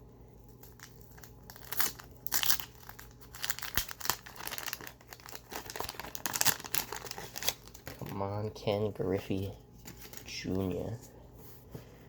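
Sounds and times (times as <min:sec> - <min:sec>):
paper wrapper tearing and crinkling: 0:00.6 - 0:08.4.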